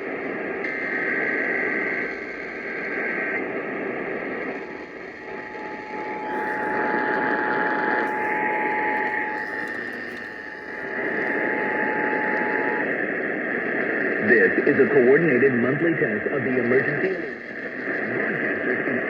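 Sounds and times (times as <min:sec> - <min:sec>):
radio static: 0:00.0 - 0:19.0
buzzy digital header bursts: 0:04.5 - 0:12.7.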